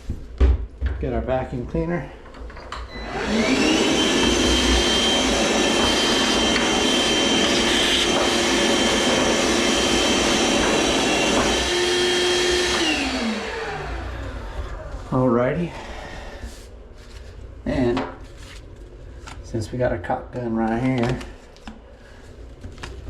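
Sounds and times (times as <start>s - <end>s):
vacuum cleaner motor whine: 2.9s - 16.5s.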